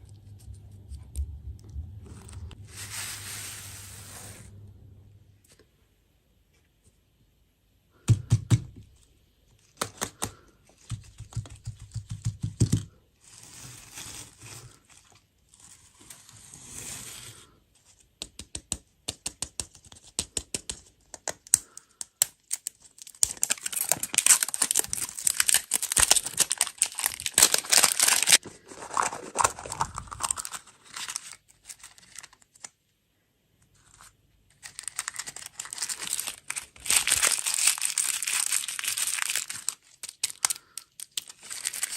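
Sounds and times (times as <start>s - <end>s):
plastic wrapping crinkling: 22.4s - 32.8s, 34.5s - 41.9s.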